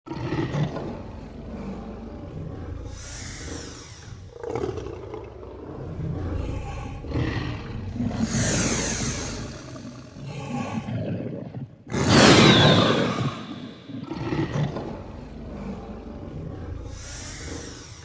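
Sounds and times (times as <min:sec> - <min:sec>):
deep rough roaring: 0:00.1 - 0:03.6, 0:04.2 - 0:10.9, 0:11.9 - 0:17.9
breathy high rush: 0:07.8 - 0:10.9.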